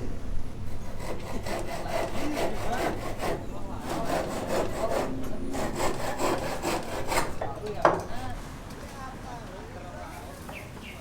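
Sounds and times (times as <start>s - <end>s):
hand saw cutting wood: 0.6s - 7.5s.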